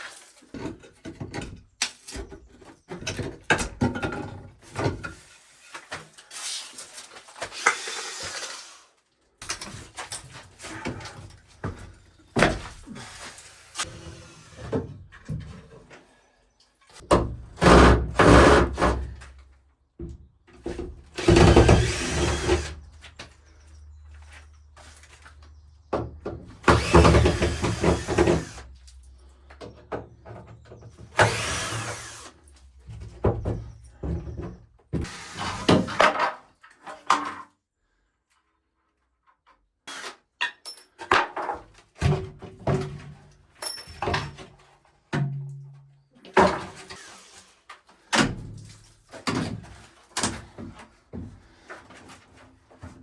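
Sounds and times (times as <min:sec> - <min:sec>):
tools dismantling wooden shelving: 0:20.6 - 0:22.8, 0:26.1 - 0:28.9.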